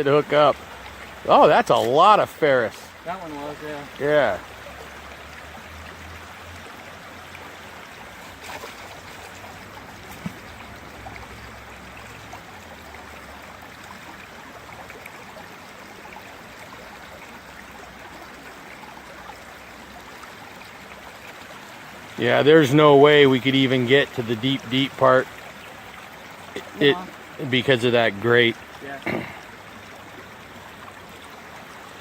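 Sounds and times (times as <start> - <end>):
stream running water: 0.0 - 32.0.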